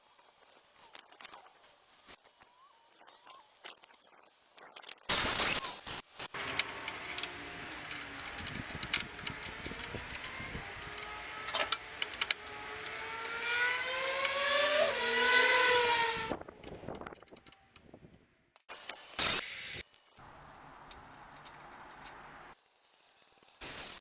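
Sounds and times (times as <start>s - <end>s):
power tool motor running: 6.4s - 16.3s.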